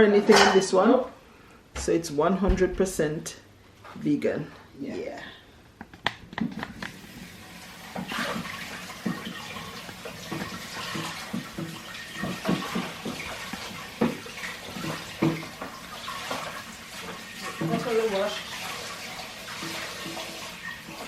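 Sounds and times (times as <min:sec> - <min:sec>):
kitchen tap running: 0:06.4 - 0:21.0.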